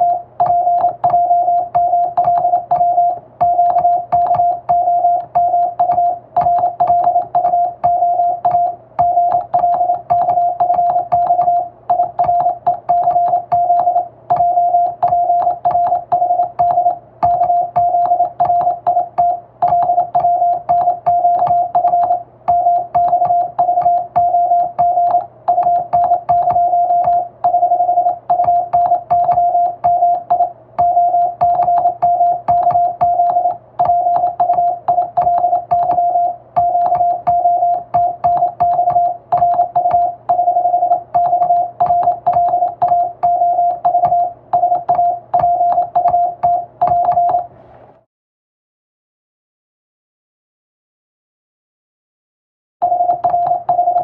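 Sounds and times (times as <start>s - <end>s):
morse code sidetone beeps: 0.0s - 47.5s, 52.8s - 54.0s.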